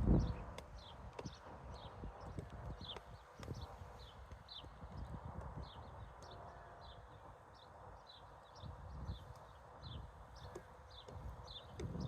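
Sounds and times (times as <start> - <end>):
woodpecker pecking wood: 10.2 - 12.0.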